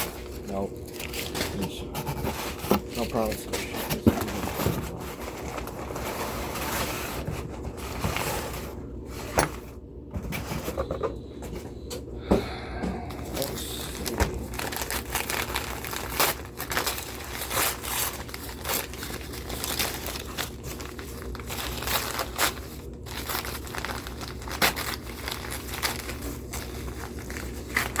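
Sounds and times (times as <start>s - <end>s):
packaging tearing: 0.0s - 1.8s, 13.2s - 28.0s
packaging crinkling and rustling: 0.0s - 9.7s, 13.1s - 28.0s.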